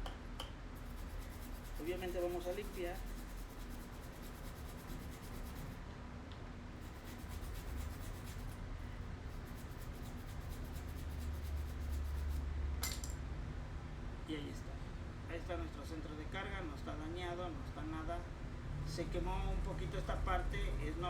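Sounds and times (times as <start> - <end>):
steady low hum: 0.0 - 21.0
scrubbing on circuit board: 0.8 - 5.8, 6.8 - 8.6, 9.3 - 12.4.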